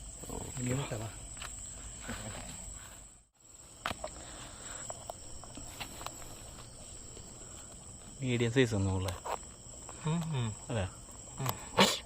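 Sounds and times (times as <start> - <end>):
insects droning: 0.0 - 12.0.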